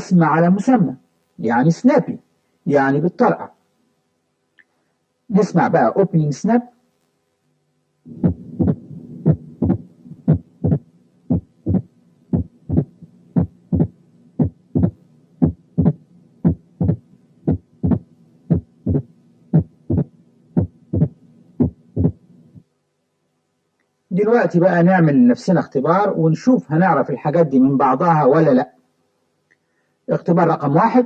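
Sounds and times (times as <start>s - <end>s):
faint steady hum: 0.0s - 31.0s
snapping heart sounds: 8.1s - 22.2s.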